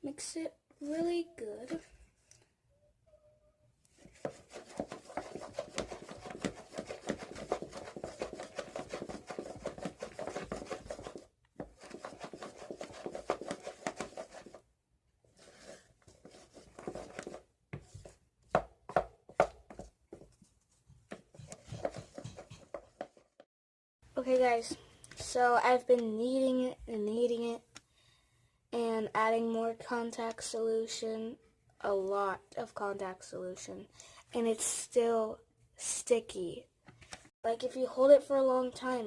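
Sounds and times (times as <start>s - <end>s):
utensil scraping a bowl: 4.1s - 14.6s.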